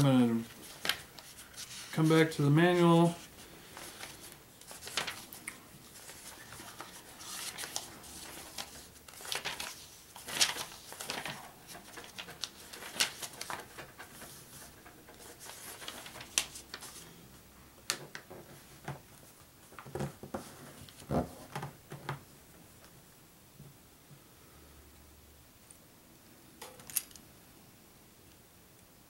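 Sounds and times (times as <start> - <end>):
paper pages rustling: 0.0 - 17.1.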